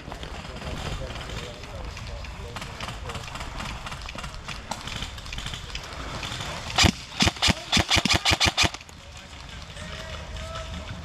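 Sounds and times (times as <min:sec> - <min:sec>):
airsoft gun shots: 0:06.7 - 0:08.8.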